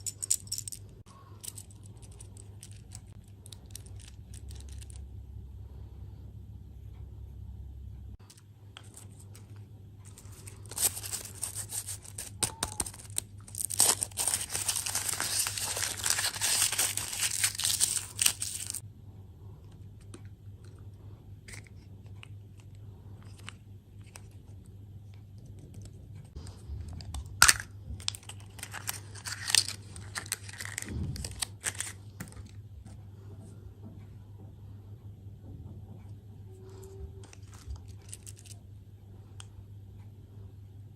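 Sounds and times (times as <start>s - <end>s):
plastic wrapper crinkling: 10.1s - 18.8s, 27.4s - 32.0s.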